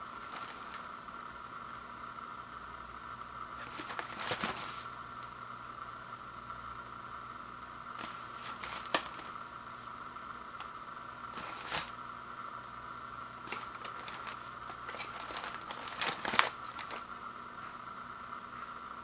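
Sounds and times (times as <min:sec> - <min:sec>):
steady background hum: 0:00.0 - 0:19.0
cardboard box rustling: 0:00.2 - 0:00.8, 0:03.6 - 0:04.9, 0:08.0 - 0:09.4, 0:11.3 - 0:12.0, 0:13.4 - 0:17.1.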